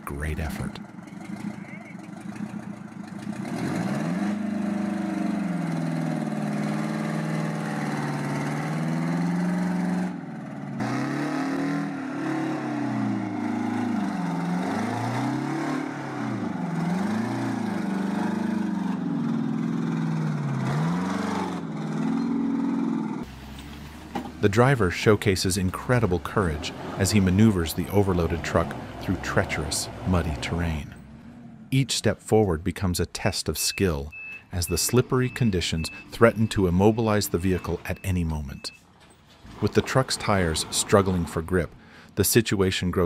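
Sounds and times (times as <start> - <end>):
truck diesel engine labouring: 0.0 - 43.0.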